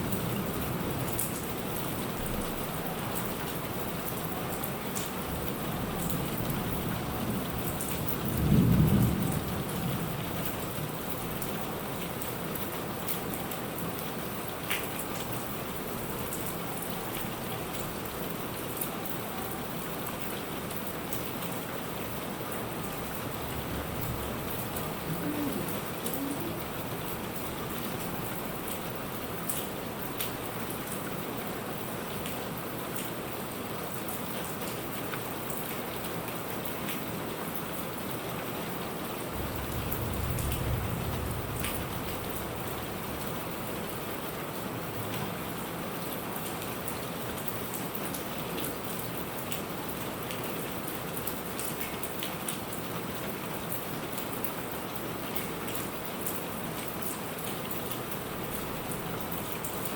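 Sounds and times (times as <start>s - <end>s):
heavy rain: 0.0s - 59.9s
raindrops ticking on a surface: 0.0s - 59.9s
distant thunder rumble: 39.4s - 43.4s.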